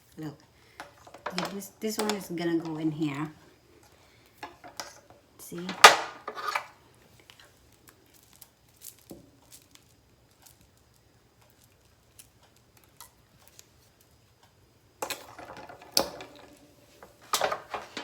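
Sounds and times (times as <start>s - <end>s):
faint clicks of grill parts: 0.4s - 18.0s
rubbing and clatter: 4.4s - 6.8s, 15.0s - 18.0s.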